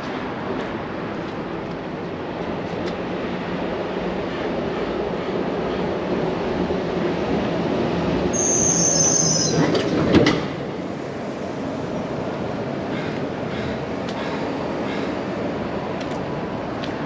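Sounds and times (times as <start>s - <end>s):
heavy vehicles and machinery rumbling: 0.0s - 17.0s
high-pitched squeal: 8.3s - 9.8s.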